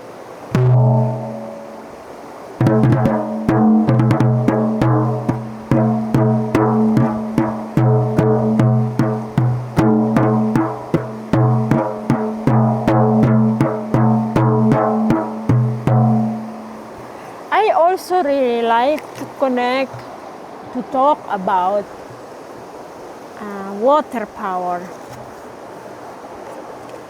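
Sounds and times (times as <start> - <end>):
percussion background music: 0.6 - 1.8, 2.6 - 16.9.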